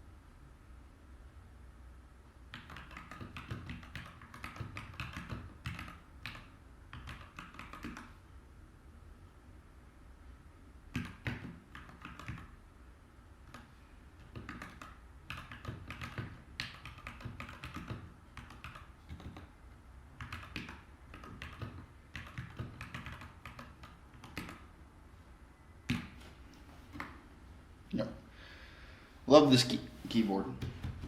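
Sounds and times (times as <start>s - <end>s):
mechanical keyboard typing: 2.5s - 8.1s, 10.9s - 12.5s, 13.5s - 19.5s, 20.2s - 24.6s.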